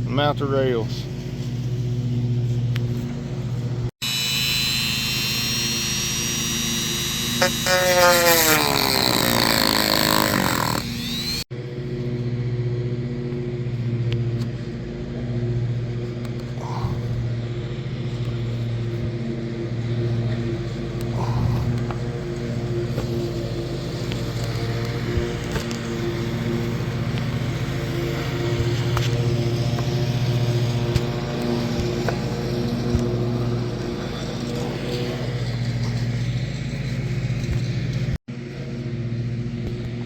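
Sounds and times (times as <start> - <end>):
rotary tool whining: 4.0 - 11.5.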